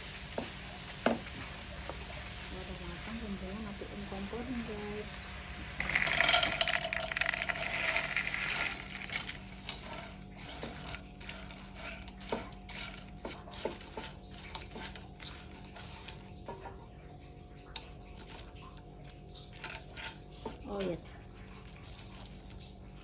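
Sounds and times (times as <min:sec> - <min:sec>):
utensil clinking in a pan: 0:05.8 - 0:16.8.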